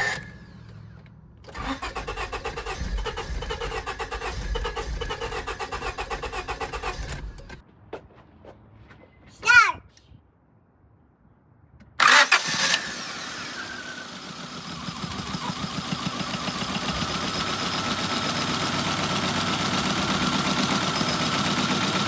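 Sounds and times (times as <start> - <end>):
car engine starting and idling: 0.0 - 7.6, 12.0 - 22.0.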